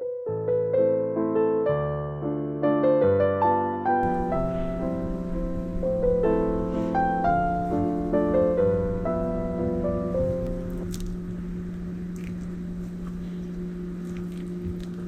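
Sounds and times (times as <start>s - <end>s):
gentle piano music: 0.0s - 15.0s
faint steady hiss: 4.0s - 15.0s
low hum: 4.0s - 15.0s.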